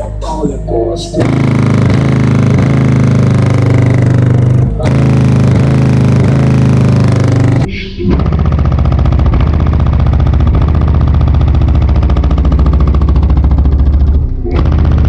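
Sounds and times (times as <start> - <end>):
deep subwoofer bass: 0.0 - 15.0.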